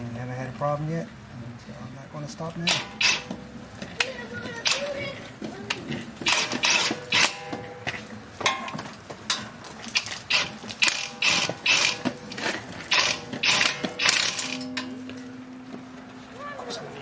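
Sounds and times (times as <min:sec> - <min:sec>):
wrench rattling: 0:02.7 - 0:14.9.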